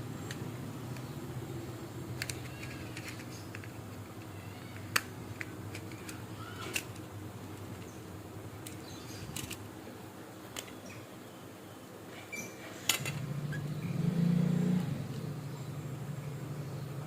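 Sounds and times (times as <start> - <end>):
low engine-like hum: 13.0 - 17.0.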